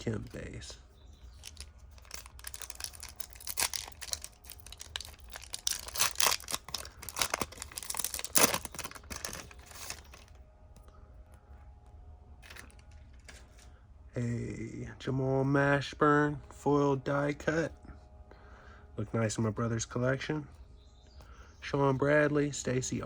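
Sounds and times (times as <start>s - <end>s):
wrapper tearing and crinkling: 1.2s - 10.3s.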